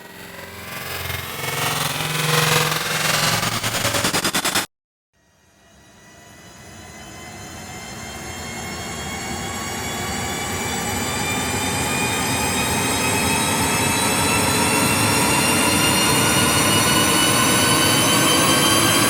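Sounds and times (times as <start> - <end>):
cinematic riser: 0.0 - 4.7.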